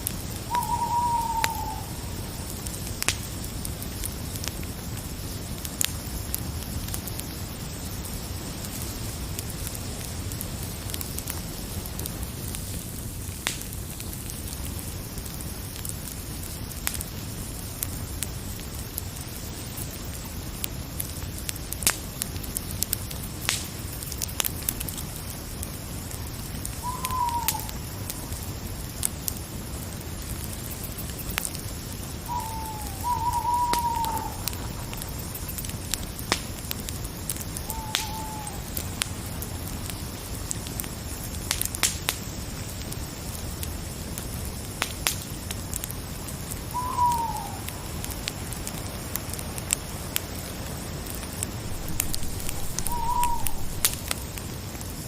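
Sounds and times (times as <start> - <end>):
crackling fire: 0.0 - 55.0
owl hooting: 0.4 - 2.2, 26.8 - 27.9, 32.2 - 35.2, 37.6 - 38.8, 46.7 - 47.9, 51.6 - 54.1.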